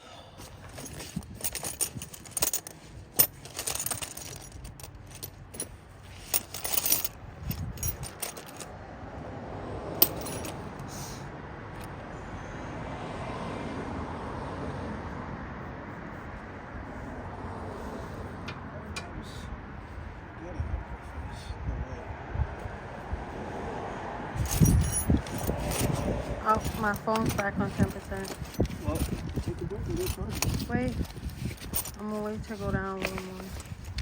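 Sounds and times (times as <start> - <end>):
metal tools clinking and rattling: 0.4 - 8.7, 10.0 - 11.0, 24.4 - 34.0.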